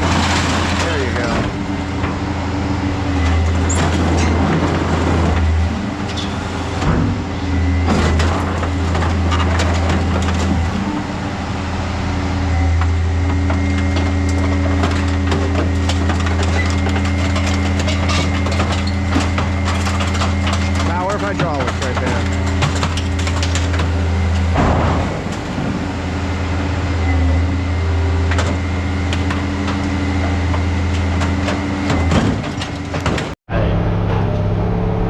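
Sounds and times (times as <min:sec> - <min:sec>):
hydraulic shear engine humming: 0:00.0 - 0:35.0
metal knocks and clanks: 0:12.7 - 0:26.0, 0:28.3 - 0:33.4.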